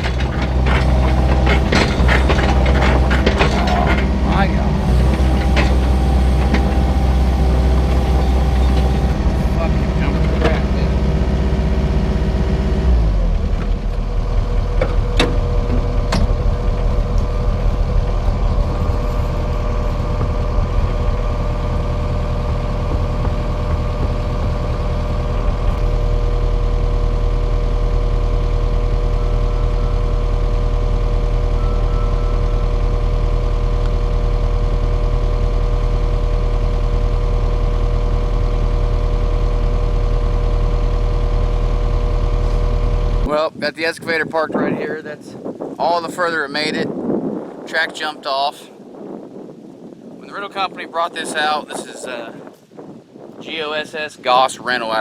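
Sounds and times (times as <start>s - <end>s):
excavator engine running: 0.0s - 43.3s.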